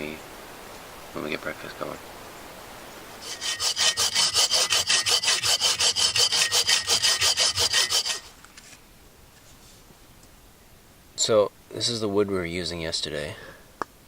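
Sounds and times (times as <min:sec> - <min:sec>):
hand saw cutting log: 0:03.2 - 0:08.3.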